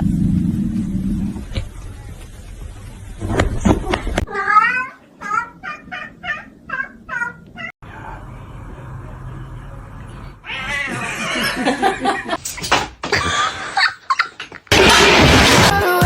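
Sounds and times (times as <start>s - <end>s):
cat meowing: 4.3s - 7.7s, 10.4s - 11.1s.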